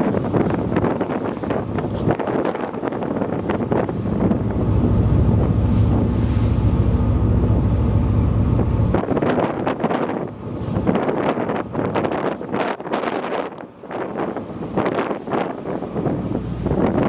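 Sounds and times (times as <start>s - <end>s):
heavy low rumble: 0.0s - 17.0s
wind buffeting microphone: 0.0s - 17.0s
steady low drone: 0.6s - 12.6s.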